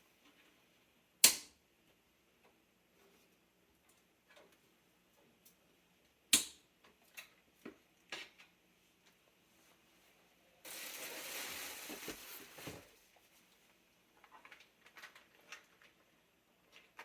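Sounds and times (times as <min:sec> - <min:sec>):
packaging rustling: 0:10.7 - 0:13.0.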